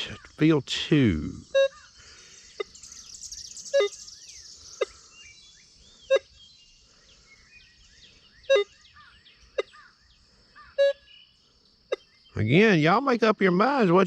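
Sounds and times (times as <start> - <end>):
birds chirping: 0.0 - 14.0
metal detector beeps: 1.5 - 1.8, 3.7 - 4.0, 8.5 - 8.7, 10.8 - 11.1.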